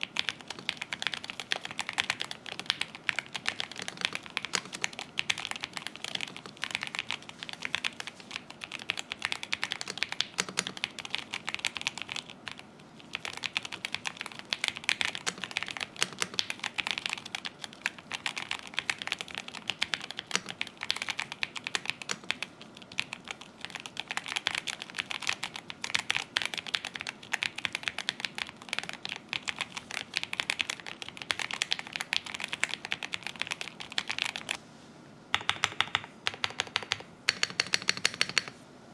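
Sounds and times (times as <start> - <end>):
mechanical keyboard typing: 0.0 - 34.6, 35.3 - 38.6.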